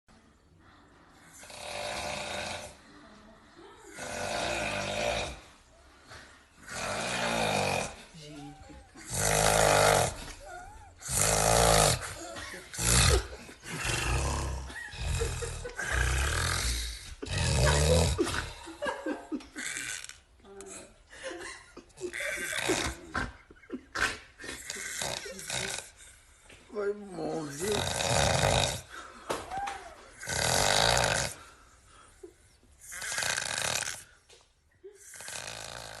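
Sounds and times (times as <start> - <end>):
quiet breaths: 0.1 - 19.6, 24.3 - 36.0
person snoring loudly: 1.3 - 2.8, 3.9 - 5.6, 6.6 - 18.8, 22.0 - 23.3, 24.4 - 26.1, 27.2 - 29.1, 30.1 - 31.5, 32.8 - 34.2, 35.0 - 36.0.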